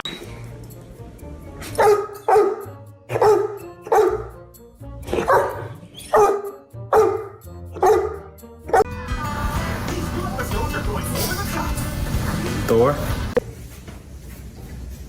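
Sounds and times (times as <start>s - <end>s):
dog barking: 1.7s - 4.4s, 5.1s - 8.9s.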